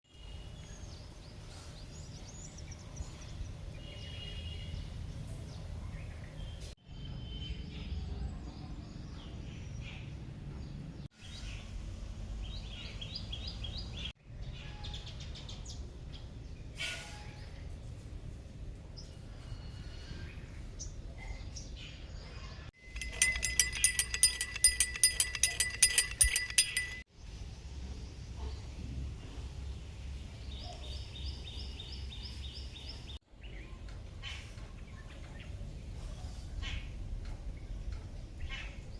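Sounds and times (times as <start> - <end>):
birds chirping: 22.8 - 27.0.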